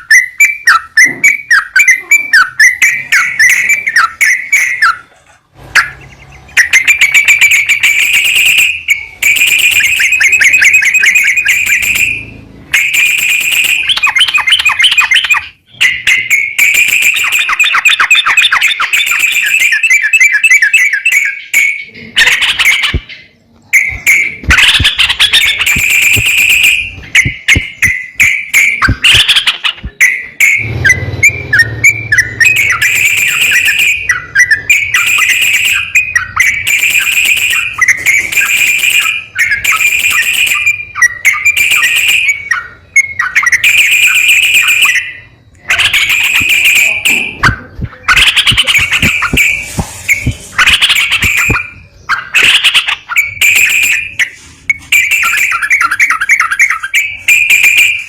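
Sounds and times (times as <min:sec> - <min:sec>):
bird chattering trilled song: 0:00.0 - 0:05.1, 0:05.8 - 0:58.0.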